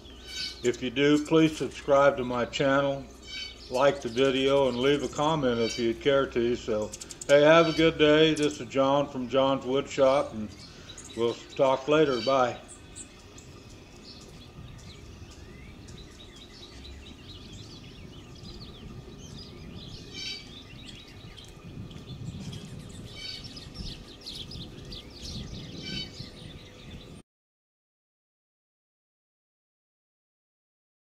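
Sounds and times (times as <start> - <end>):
low steady rumble: 0.0 - 27.2
small songbirds chirping: 0.0 - 27.2.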